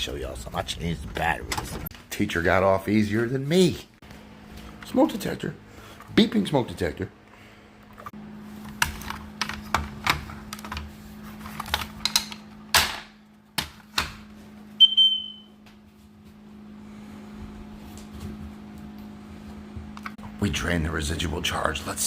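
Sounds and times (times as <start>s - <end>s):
smoke detector beep: 14.8s - 15.6s.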